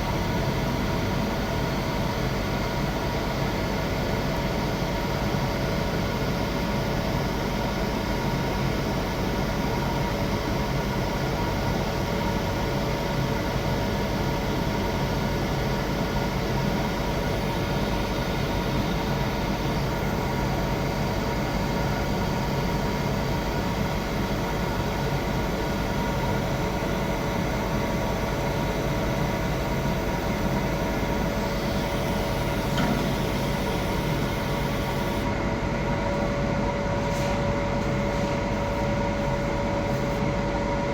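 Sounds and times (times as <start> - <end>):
electrical whine: 27.7 - 35.2.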